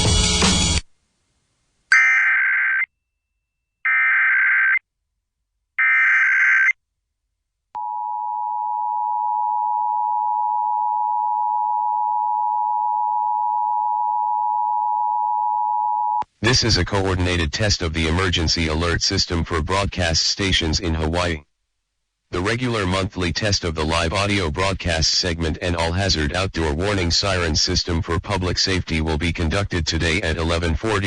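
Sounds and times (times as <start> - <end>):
screeching digital warble: 1.9 - 2.9, 5.8 - 6.8.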